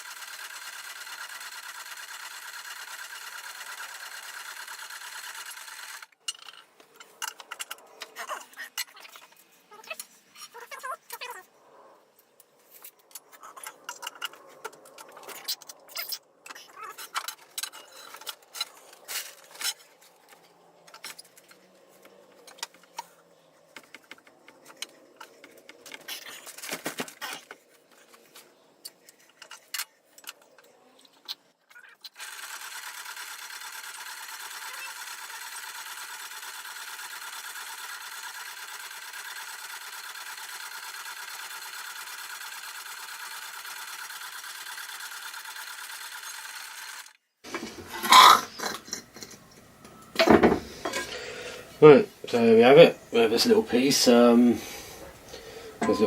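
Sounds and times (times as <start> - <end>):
power hacksaw cutting metal: 0.0 - 6.1, 32.1 - 49.4.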